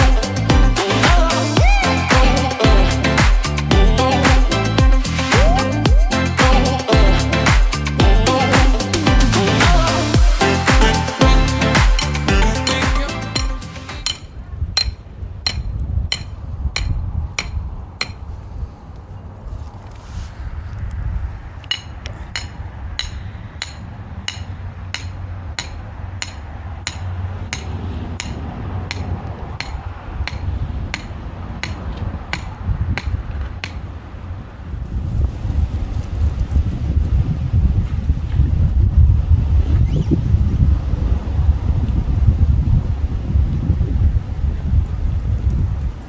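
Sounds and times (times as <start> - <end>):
hammer strikes: 0.0 - 18.2, 21.7 - 33.9
wind rumbling on microphone: 14.0 - 46.0.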